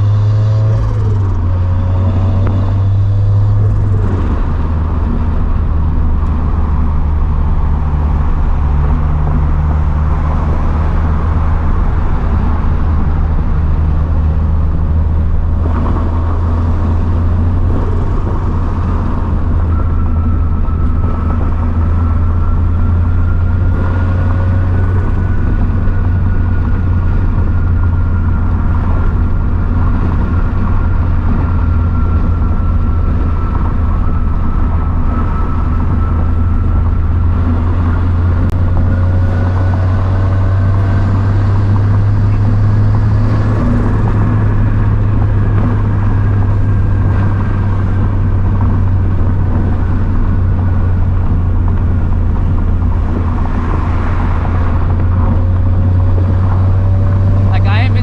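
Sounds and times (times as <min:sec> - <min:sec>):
car engine drone: 0:00.0 - 0:58.0
road noise: 0:00.0 - 0:58.0.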